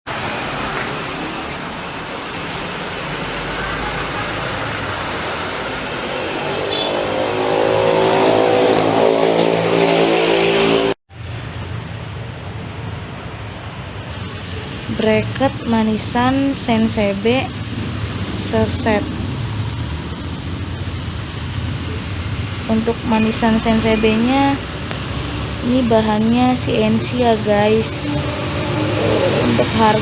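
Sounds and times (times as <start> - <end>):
vehicle engine revving: 0.2 - 11.0, 26.6 - 30.0.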